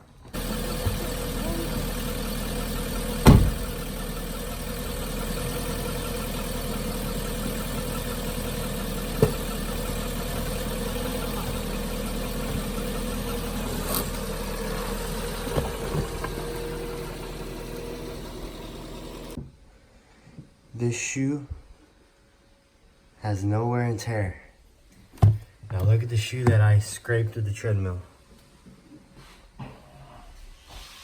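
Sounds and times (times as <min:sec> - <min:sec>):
car engine running slowly: 0:00.0 - 0:19.4
thump: 0:03.2 - 0:03.7, 0:09.2 - 0:09.5, 0:25.2 - 0:25.4.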